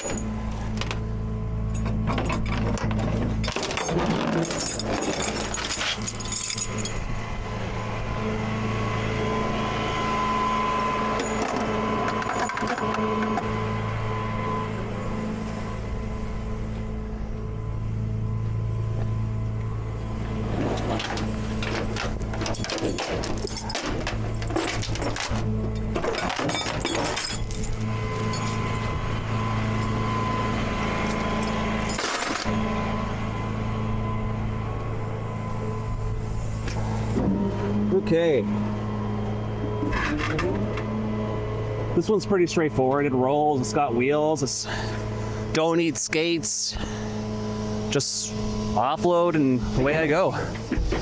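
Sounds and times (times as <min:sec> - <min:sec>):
metallic clinking and rattling: 0:00.0 - 0:01.1, 0:01.7 - 0:07.3, 0:11.2 - 0:13.4, 0:20.5 - 0:28.8, 0:31.0 - 0:32.6
high whine: 0:00.0 - 0:51.0
truck engine humming: 0:00.0 - 0:51.0.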